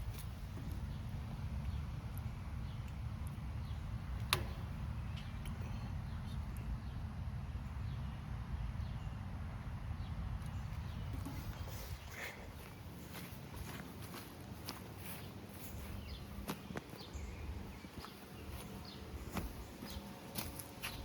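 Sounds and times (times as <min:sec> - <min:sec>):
footsteps outdoors: 0:00.0 - 0:05.4, 0:10.3 - 0:21.0
wind rumble on microphone: 0:00.0 - 0:21.0.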